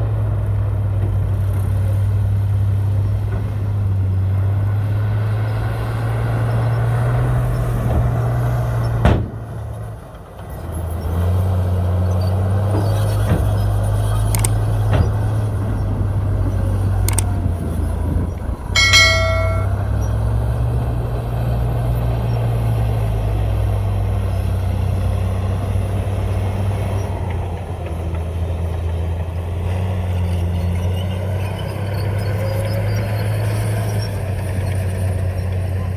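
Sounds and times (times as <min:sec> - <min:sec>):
ringing metal clang: 0:18.8 - 0:19.9.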